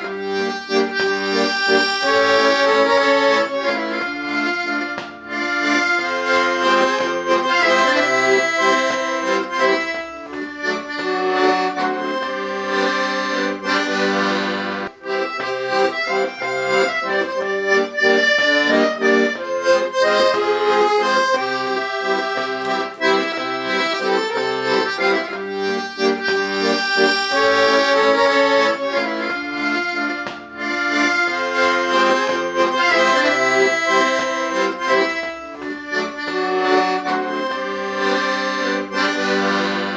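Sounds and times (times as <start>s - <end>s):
accordion playing a tune: 0.0s - 39.9s.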